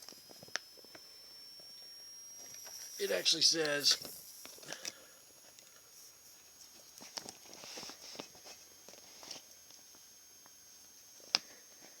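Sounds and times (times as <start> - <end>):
faint high-pitched whine: 0.0 - 12.0.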